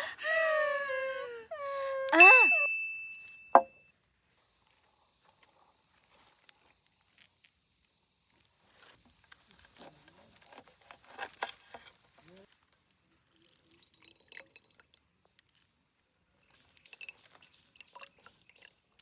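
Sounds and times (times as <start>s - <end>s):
high-pitched insect-like hiss: 4.4s - 12.5s.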